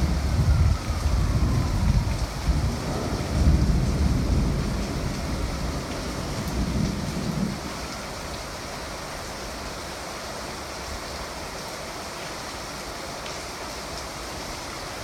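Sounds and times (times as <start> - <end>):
low thunder rumble: 0.0 - 7.7
rain: 0.0 - 15.0
wind: 0.0 - 15.0.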